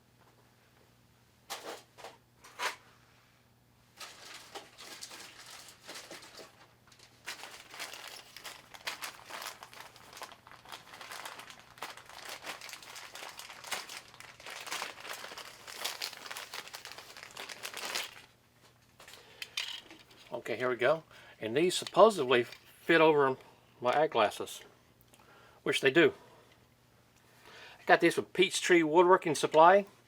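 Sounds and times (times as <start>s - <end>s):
plastic packaging crinkling: 4.0s - 18.3s.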